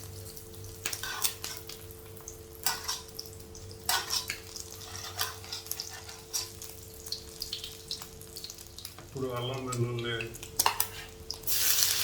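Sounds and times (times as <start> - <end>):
frying sizzle: 0.0 - 12.0
spatula scraping in a pan: 0.8 - 1.8, 2.6 - 3.2, 3.8 - 6.8, 10.6 - 12.0.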